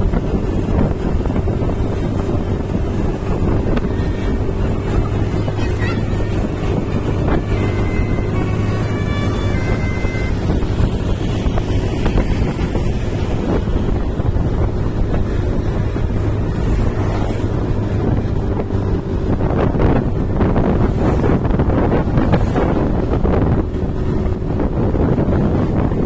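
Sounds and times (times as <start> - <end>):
vehicle engine drone: 0.0 - 26.0
wind buffeting microphone: 0.0 - 26.0
high horn notes: 3.2 - 12.4.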